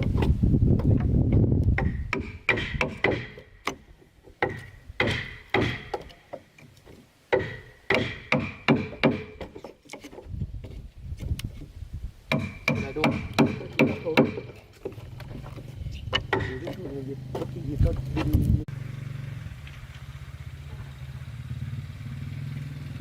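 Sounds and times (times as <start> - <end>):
metal tool striking wood: 0.0 - 10.3, 12.3 - 17.6.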